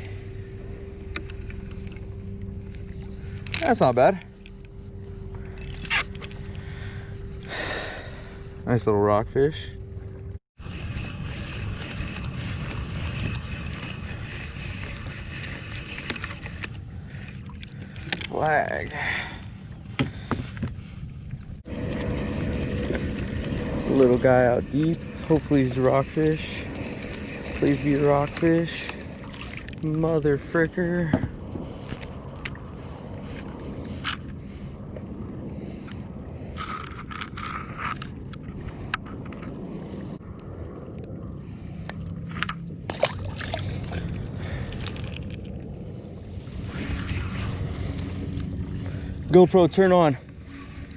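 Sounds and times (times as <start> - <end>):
wind on microphone: 10.6 - 50.9
scraping sound: 21.6 - 31.0, 36.4 - 39.6.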